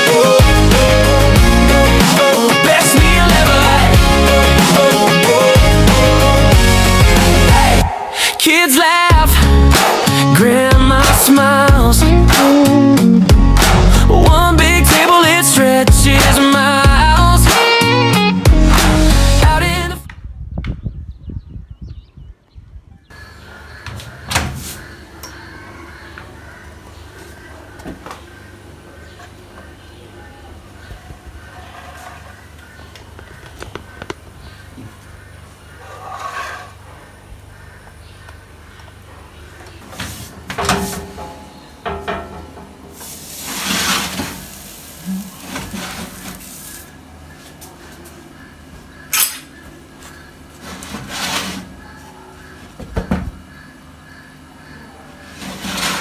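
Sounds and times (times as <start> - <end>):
utensil scraping cookware: 35.8 - 37.0, 39.9 - 47.0, 50.6 - 52.0, 55.3 - 56.0
utensil knocking on cookware: 40.6 - 43.0.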